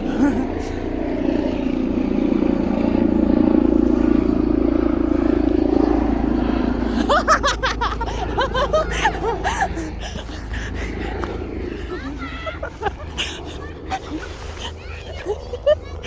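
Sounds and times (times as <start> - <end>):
low rumble: 0.0 - 16.0
children shouting and squealing: 6.9 - 16.0.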